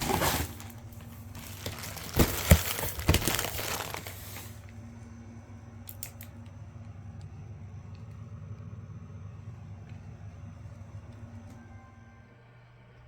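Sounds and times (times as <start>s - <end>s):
packaging crinkling: 0.0s - 4.7s.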